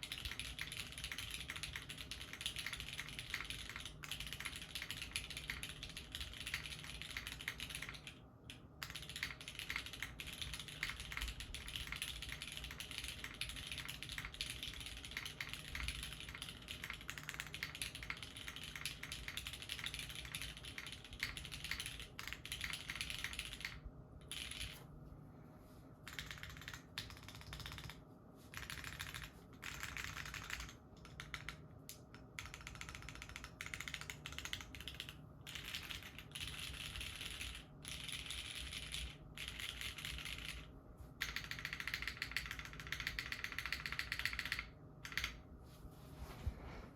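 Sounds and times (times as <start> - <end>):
mechanical keyboard typing: 0.0 - 24.8, 26.0 - 45.4.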